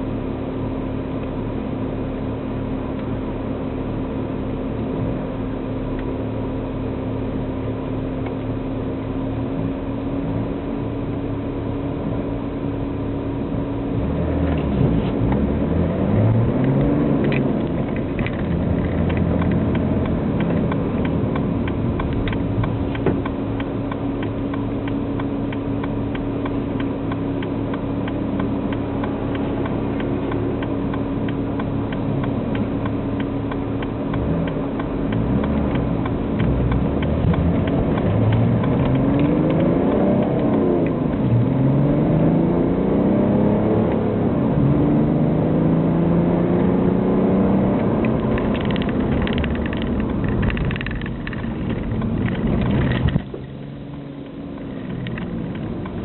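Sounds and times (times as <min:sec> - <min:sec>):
car exhaust drone: 0:00.0 - 0:56.0
engine accelerating: 0:13.3 - 0:56.0.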